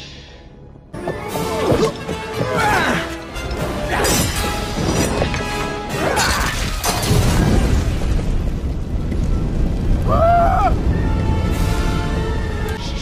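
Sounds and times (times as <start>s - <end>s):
film soundtrack music: 0.0s - 13.0s
loud crashing and shattering: 3.2s - 8.6s.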